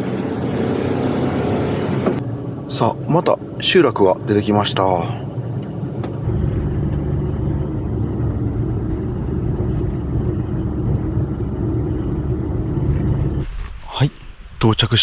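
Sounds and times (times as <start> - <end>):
road noise: 0.0 - 15.0
small truck engine driving: 5.3 - 13.4.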